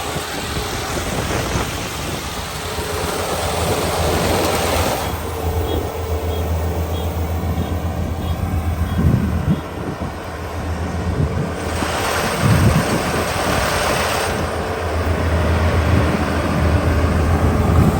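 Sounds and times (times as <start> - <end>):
combine harvester engine hum: 0.0 - 17.9
faint high beeps: 5.6 - 9.7.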